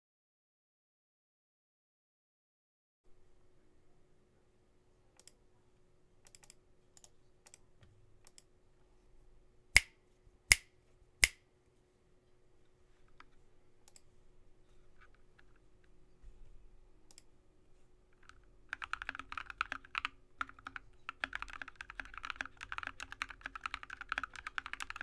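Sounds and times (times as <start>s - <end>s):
light keyboard key presses: 18.2s - 25.0s
loud sharp keyboard clicks: 18.2s - 25.0s.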